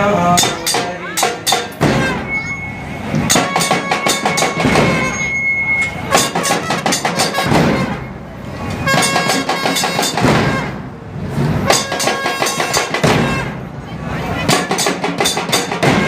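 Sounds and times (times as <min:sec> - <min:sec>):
clashing jingling metal percussion: 0:00.4 - 0:08.1, 0:08.9 - 0:10.5, 0:11.7 - 0:13.2, 0:14.5 - 0:16.0.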